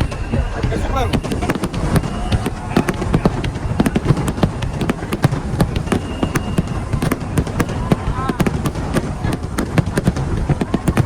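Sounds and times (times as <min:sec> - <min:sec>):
fireworks cracks and bangs: 0:00.0 - 0:11.0.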